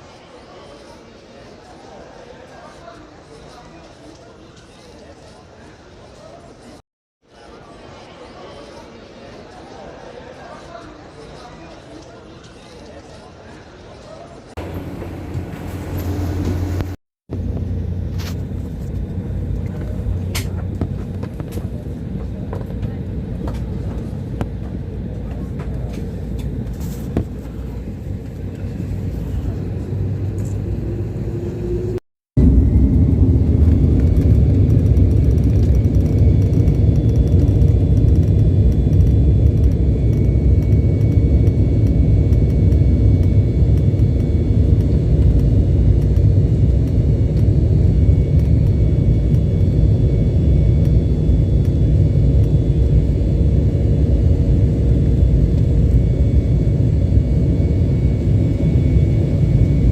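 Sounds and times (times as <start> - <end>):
airliner engine rumble: 14.6 - 59.9.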